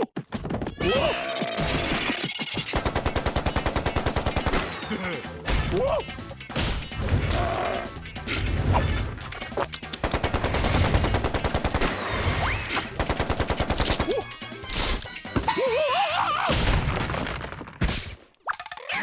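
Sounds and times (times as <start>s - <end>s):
music: 0.3s - 16.5s
squeaky cartoon character voices: 0.8s - 2.7s, 18.8s - 19.0s.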